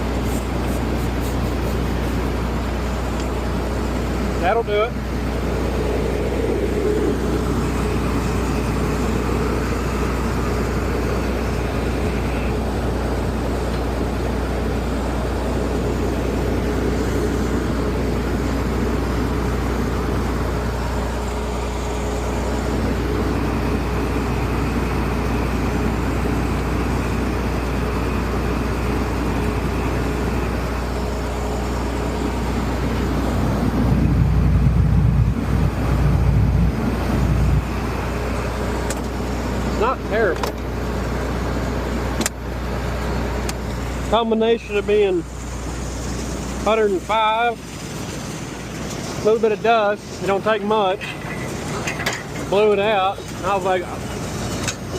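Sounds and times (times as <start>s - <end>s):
combine harvester engine running: 0.0s - 54.9s
faint high whine: 2.6s - 26.2s.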